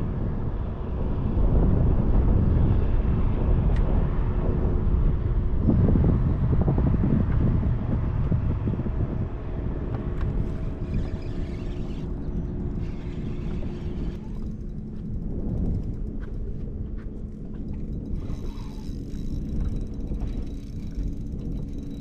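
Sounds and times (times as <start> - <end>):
wind: 0.0 - 22.0
boat motor running: 7.4 - 22.0
water noise: 10.1 - 22.0.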